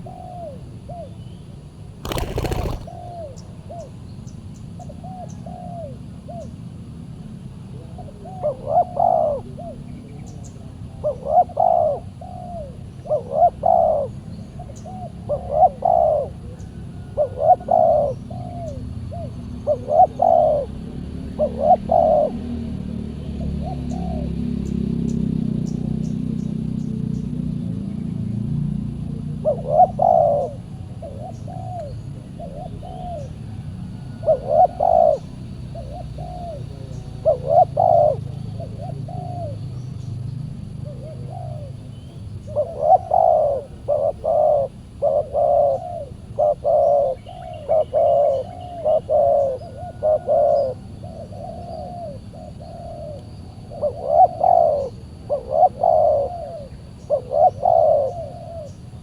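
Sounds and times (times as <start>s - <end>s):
doves cooing: 2.0s - 3.8s, 7.8s - 10.0s, 10.6s - 22.7s, 28.9s - 59.0s.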